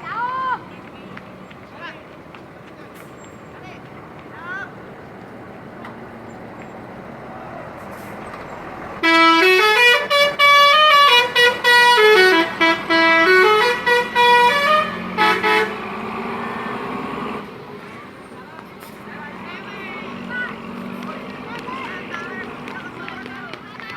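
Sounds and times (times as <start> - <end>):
musical horn melody: 9.0 - 16.0.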